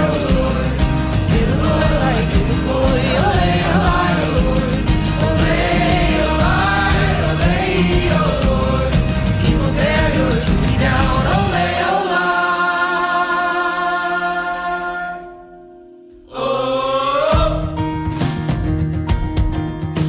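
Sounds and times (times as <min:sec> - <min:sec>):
drumbeat: 0:00.0 - 0:11.8, 0:17.3 - 0:20.0
chorus of voices singing: 0:00.0 - 0:17.9.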